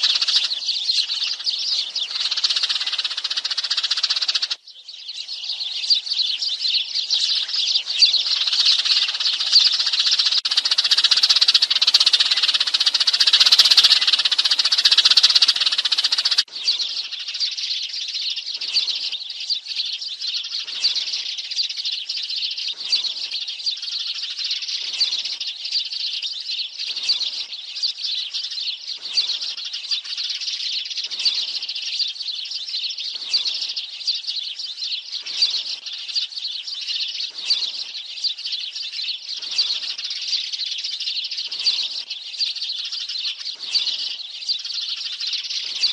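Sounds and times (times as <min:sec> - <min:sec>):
sparrow flock chirping: 0:00.0 - 0:45.9.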